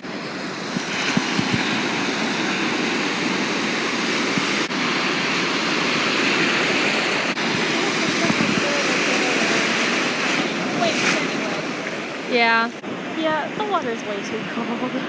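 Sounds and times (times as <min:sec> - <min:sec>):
ocean waves breaking: 0:00.0 - 0:15.0.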